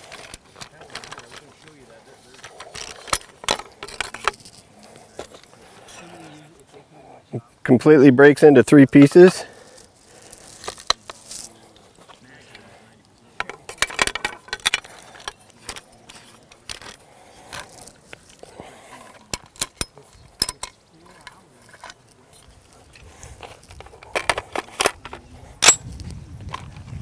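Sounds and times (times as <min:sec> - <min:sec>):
metallic clicks of rifle handling: 0:12.5 - 0:18.5, 0:19.1 - 0:22.5, 0:23.4 - 0:26.7.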